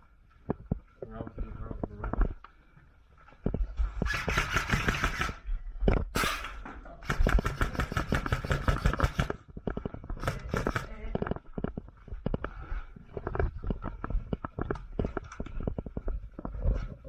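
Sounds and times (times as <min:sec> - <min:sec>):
airsoft guns firing bursts: 0:04.0 - 0:05.4, 0:07.0 - 0:09.4, 0:10.2 - 0:11.0
short loud hiss: 0:06.2 - 0:06.6.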